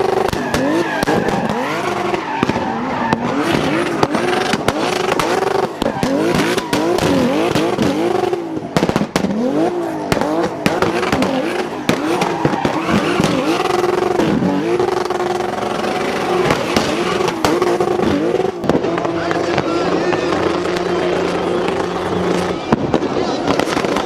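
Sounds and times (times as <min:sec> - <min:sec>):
tyres squealing: 0:00.0 - 0:08.4, 0:10.2 - 0:18.5
car engine revving: 0:00.0 - 0:24.0
exhaust pops and bangs: 0:00.1 - 0:24.0.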